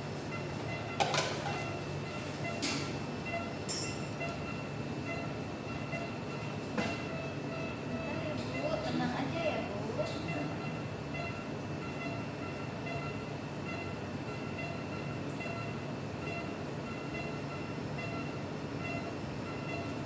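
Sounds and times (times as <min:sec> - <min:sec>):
mechanical hum: 0:00.0 - 0:20.0.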